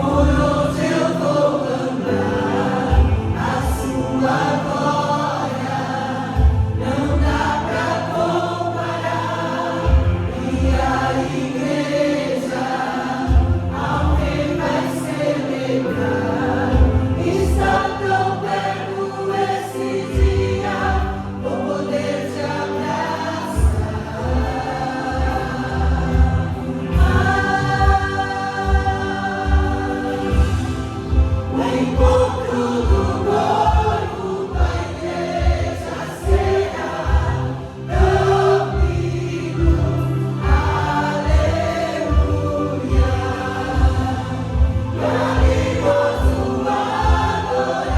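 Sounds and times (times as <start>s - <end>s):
gospel song sung live: 0.0s - 47.9s
bass and drum beat: 2.8s - 4.0s, 13.3s - 14.8s, 23.6s - 47.9s.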